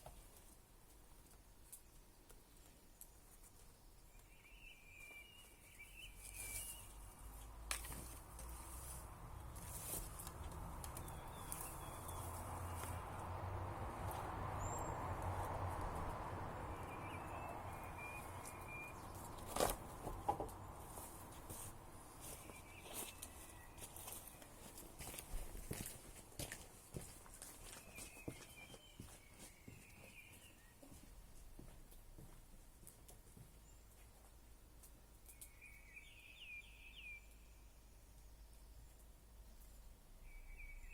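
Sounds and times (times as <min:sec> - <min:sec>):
bird chirps: 0:04.0 - 0:07.1, 0:11.0 - 0:13.0, 0:16.6 - 0:19.6, 0:27.6 - 0:30.9, 0:35.3 - 0:39.0, 0:39.6 - 0:40.9.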